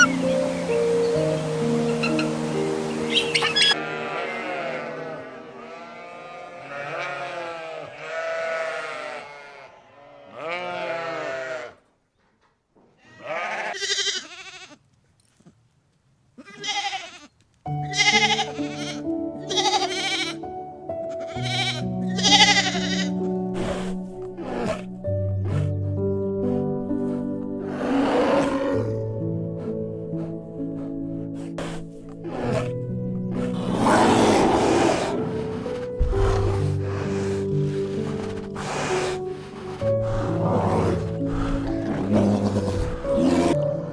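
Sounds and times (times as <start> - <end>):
sheep bleating: 0.0 - 0.7, 1.6 - 11.8, 13.0 - 14.8, 16.4 - 20.5, 21.1 - 23.3
soft background music: 0.0 - 8.8, 17.6 - 43.9.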